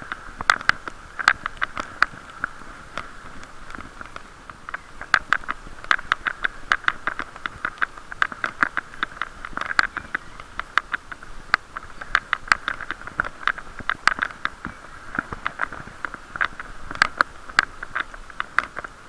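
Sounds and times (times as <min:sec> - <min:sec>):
muffled hollow noise: 0:00.0 - 0:19.0.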